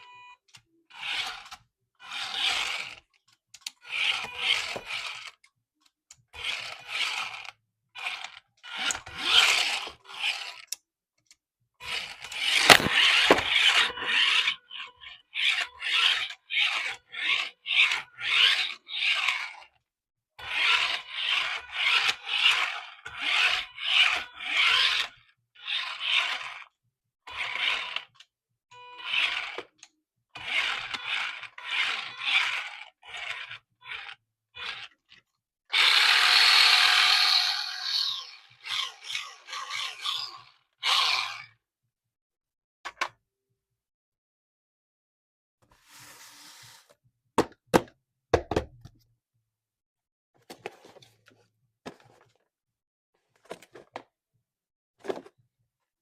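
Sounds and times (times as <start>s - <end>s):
rubbing and scraping strokes: 12.3s - 19.6s, 45.7s - 47.0s.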